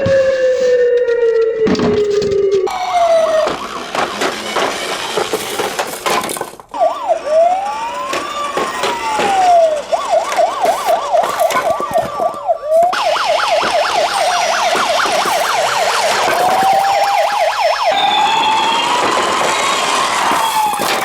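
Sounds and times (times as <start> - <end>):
siren yelping and wailing: 0.0 - 6.0, 6.7 - 21.0.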